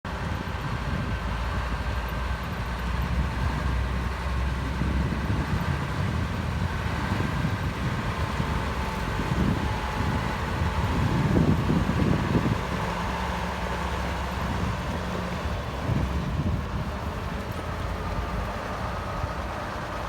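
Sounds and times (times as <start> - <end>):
diesel engine rumbling: 0.0 - 20.0.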